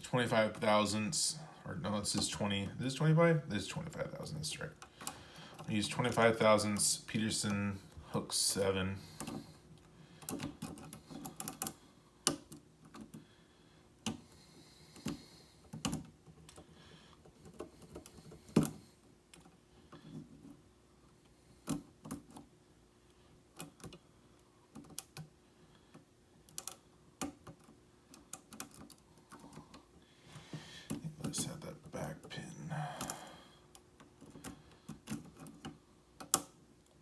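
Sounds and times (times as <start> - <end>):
lock pick clicks and taps: 33.7 - 36.5.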